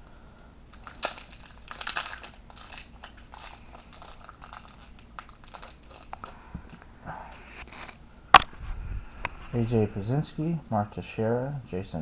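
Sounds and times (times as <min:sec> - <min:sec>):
wrapper crinkling and rustling: 0:00.7 - 0:08.0.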